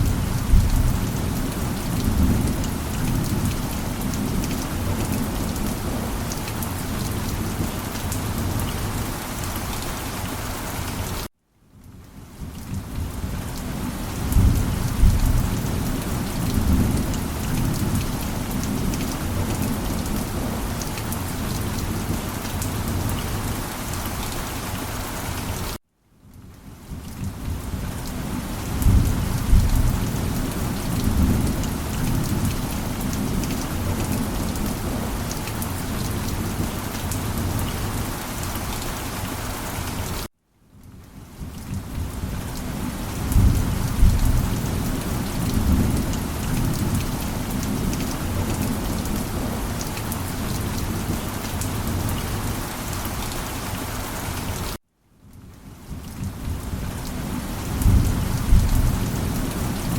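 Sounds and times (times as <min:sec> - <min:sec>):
rolling thunder: 0:00.0 - 0:06.1, 0:14.2 - 0:15.8, 0:43.3 - 0:49.6, 0:57.7 - 0:59.9
steady rain: 0:00.0 - 0:59.9.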